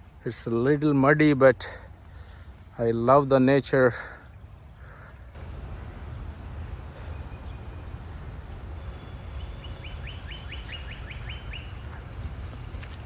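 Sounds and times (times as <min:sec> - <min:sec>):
low outdoor background noise: 0:00.0 - 0:13.0
bird singing high notes: 0:05.4 - 0:12.5.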